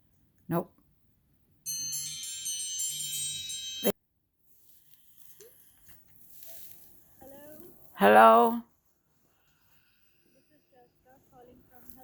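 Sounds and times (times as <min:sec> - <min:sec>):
high bell-like chiming tones: 0:01.7 - 0:04.0.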